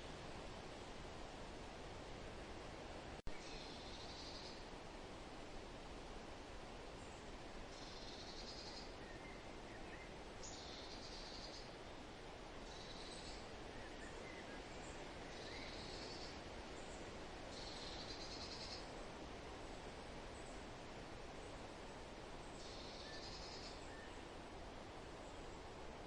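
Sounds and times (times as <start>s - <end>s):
wind rustling: 0.0s - 26.0s
faint bird chirps: 3.3s - 4.7s, 7.0s - 11.8s, 12.6s - 19.0s, 22.5s - 24.3s.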